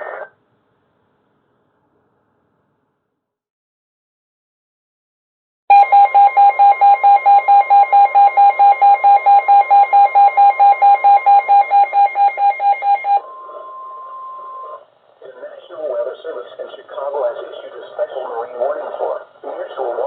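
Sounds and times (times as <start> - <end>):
steady alarm tone: 5.7 - 14.9.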